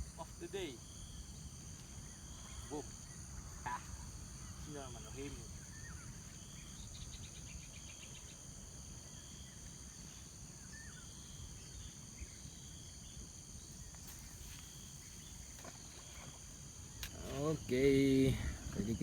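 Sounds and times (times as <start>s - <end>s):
high-pitched insect trill: 0.0s - 19.0s
lower insect trill: 0.0s - 19.0s.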